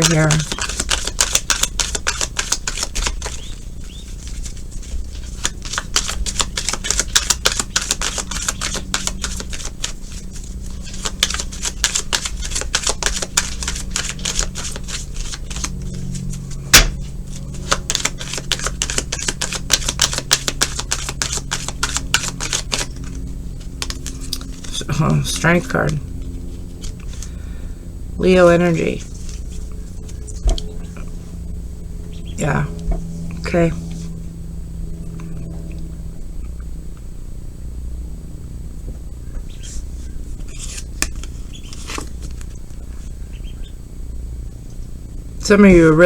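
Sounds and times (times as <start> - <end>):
cards being shuffled: 0.0 - 27.4, 28.7 - 31.1, 39.6 - 43.1
faint low hum: 0.0 - 46.0.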